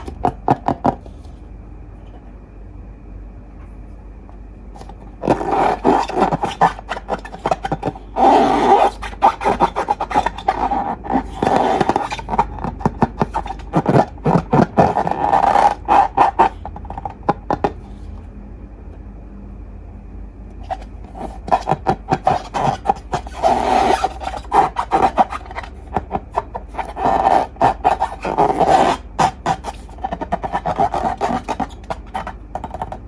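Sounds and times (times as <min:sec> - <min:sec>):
slime squelching by hand: 0:20.6 - 0:33.0.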